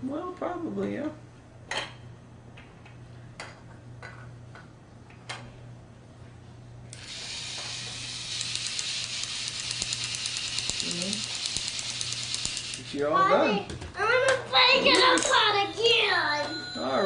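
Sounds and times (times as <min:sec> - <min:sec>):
toy drill buzzy whir: 0:06.9 - 0:13.0.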